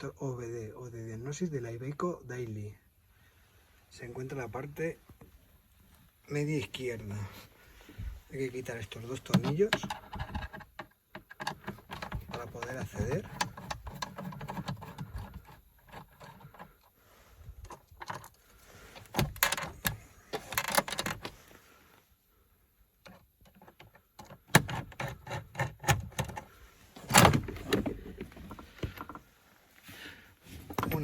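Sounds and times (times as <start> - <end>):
cover panel being unscrewed: 9.1 - 16.8, 23.5 - 29.2.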